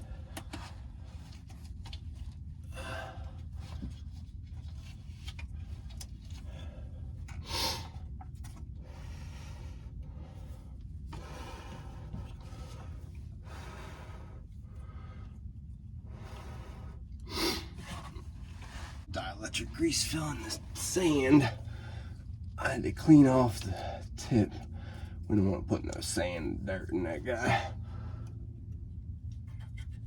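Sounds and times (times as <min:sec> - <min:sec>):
person breathing hard: 0:08.8 - 0:19.1, 0:21.6 - 0:22.4.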